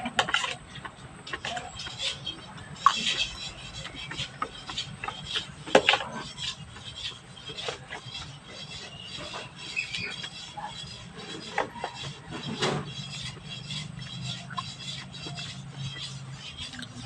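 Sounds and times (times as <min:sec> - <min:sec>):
mouth eating noises: 0:16.6 - 0:17.0.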